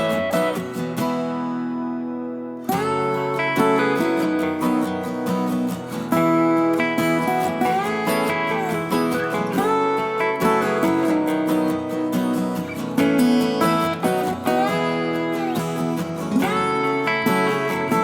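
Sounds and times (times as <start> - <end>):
acoustic guitar country music: 0.0 - 18.0.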